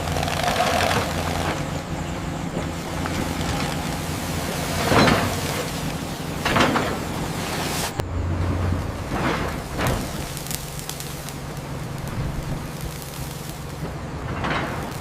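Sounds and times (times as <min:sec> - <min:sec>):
low mechanical rumble: 0:00.0 - 0:15.0
noisy hiss: 0:00.0 - 0:15.0.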